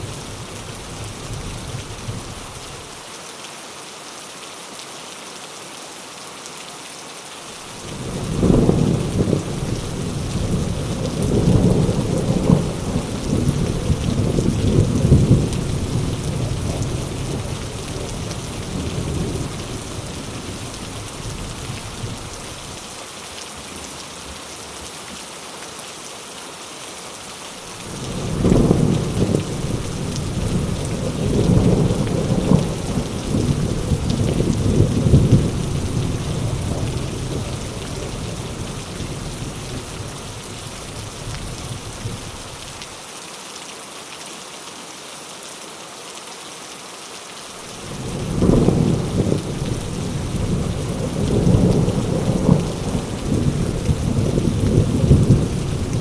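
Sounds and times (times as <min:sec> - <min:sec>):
heavy rain falling: 0:00.0 - 0:56.0
rolling thunder: 0:07.9 - 0:22.3, 0:27.8 - 0:42.4, 0:47.8 - 0:56.0.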